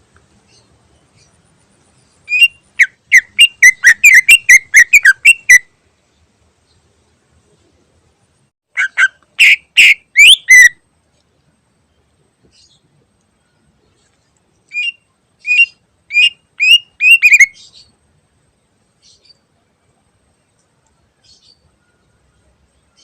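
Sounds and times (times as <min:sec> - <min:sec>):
bird whistling sharp notes: 0:08.8 - 0:10.8, 0:14.7 - 0:17.7.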